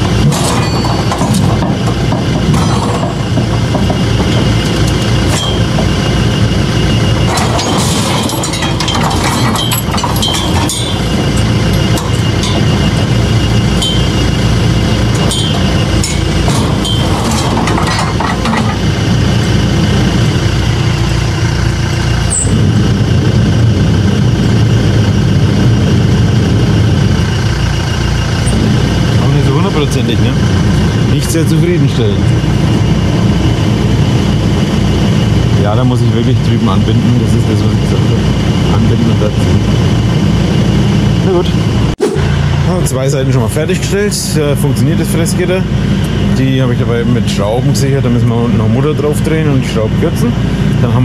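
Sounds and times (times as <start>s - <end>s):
tractor engine running under load: 0.0s - 51.0s.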